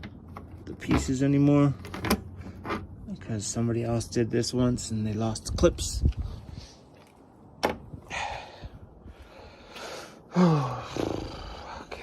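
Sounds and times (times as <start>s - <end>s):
person grunting: 10.3s - 12.0s.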